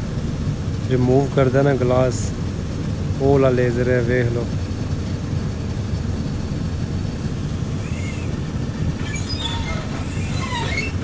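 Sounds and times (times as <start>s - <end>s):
machine humming: 2.3s - 10.8s.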